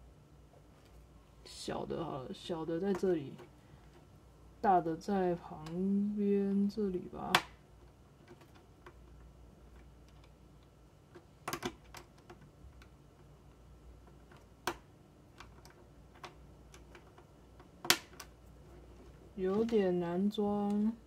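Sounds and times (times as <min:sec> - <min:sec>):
plastic pieces clicking: 0:07.3 - 0:13.0.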